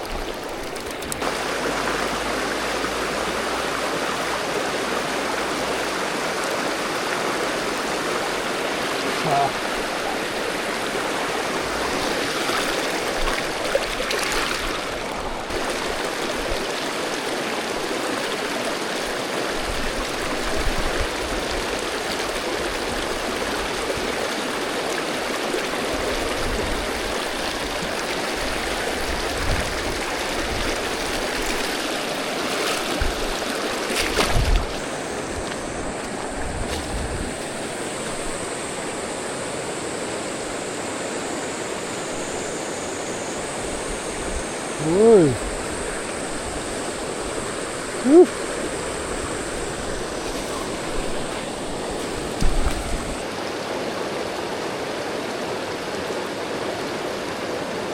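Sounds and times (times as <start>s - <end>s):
river water rushing over rocks: 0.0s - 57.9s
faint steady high tone: 38.2s - 48.4s.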